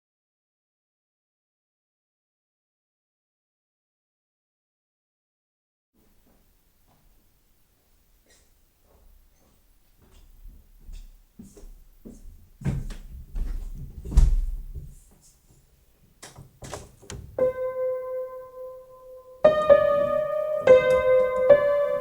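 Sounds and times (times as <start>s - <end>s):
keyboard notes and chords: 17.2s - 22.0s.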